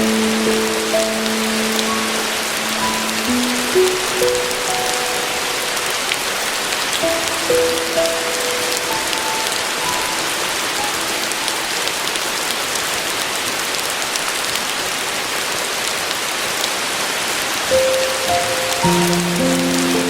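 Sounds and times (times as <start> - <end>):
soft piano notes: 0.0 - 12.8, 17.7 - 20.0
steady rain falling: 0.0 - 20.0.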